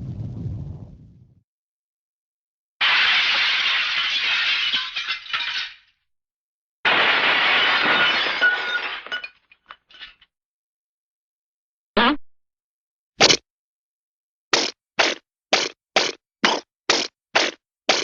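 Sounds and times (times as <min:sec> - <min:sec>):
cartoon glass shattering: 0:02.8 - 0:06.0, 0:06.9 - 0:10.2.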